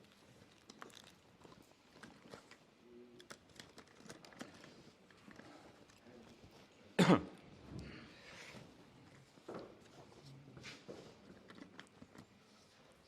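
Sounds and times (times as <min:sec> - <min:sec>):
person coughing: 0:07.0 - 0:07.4.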